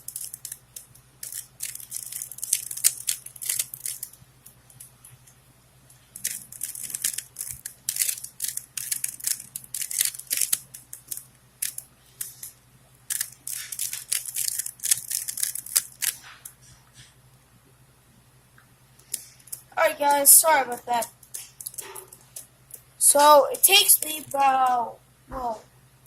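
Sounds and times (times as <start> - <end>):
plastic puzzle cube clicking: 0.0 - 4.1, 6.2 - 12.5, 13.1 - 16.2.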